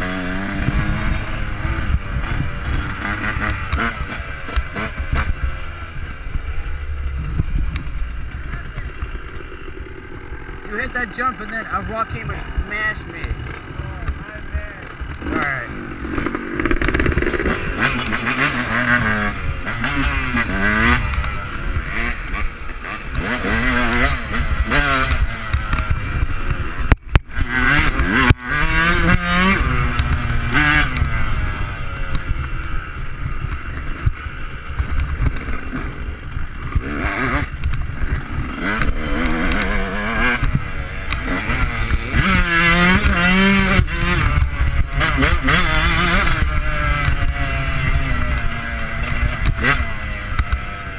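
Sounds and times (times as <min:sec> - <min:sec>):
motocross engine revving: 0:00.0 - 0:50.9
wind noise on microphone: 0:00.2 - 0:09.0.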